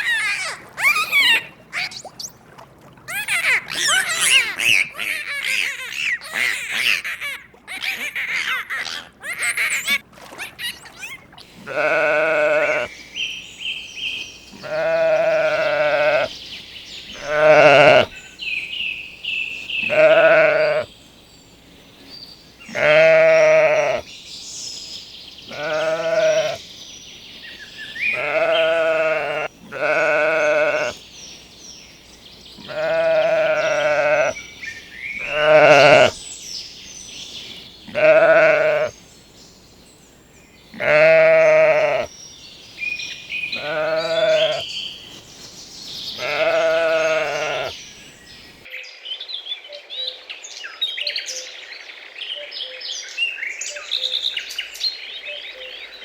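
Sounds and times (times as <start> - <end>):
livestock bleating: 11.5 - 12.9, 14.5 - 16.3, 17.1 - 18.1, 19.8 - 20.9, 22.7 - 24.0, 25.5 - 26.6, 28.0 - 31.0, 32.6 - 34.4, 35.2 - 36.2, 37.9 - 38.9, 40.7 - 42.1, 43.6 - 44.7, 46.2 - 47.8.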